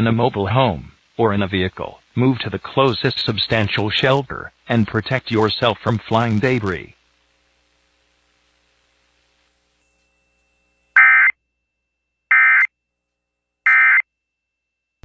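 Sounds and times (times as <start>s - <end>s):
digital data tone bursts: 11.0s - 11.3s.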